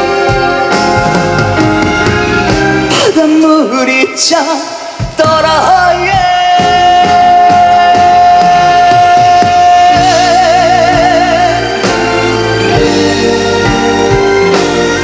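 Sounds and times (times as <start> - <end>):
keyboard: 0.0 - 4.4, 5.2 - 15.0
steady drum beat: 0.0 - 15.0
man singing long high note: 2.9 - 12.0.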